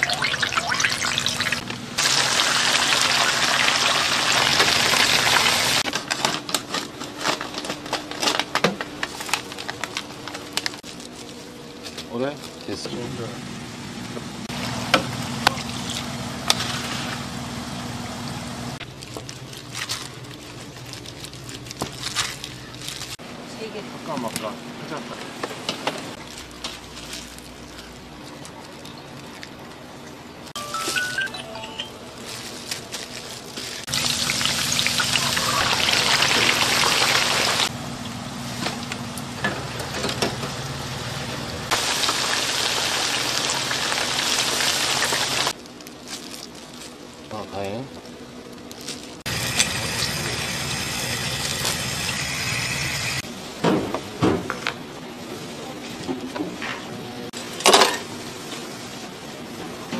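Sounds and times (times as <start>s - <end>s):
food sizzling in a pan: 0.0s - 5.8s, 33.9s - 37.7s, 41.7s - 45.6s, 49.3s - 53.2s.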